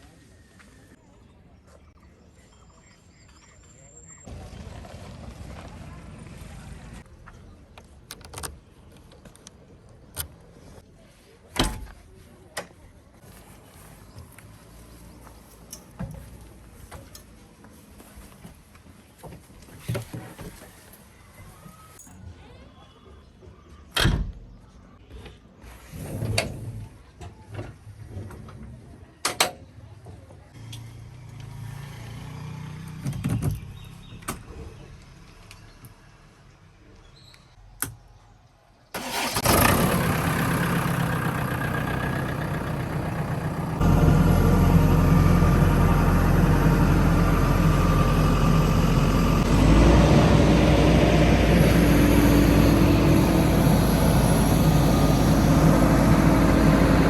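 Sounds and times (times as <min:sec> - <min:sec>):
diesel engine running: 0:39.0 - 0:57.0.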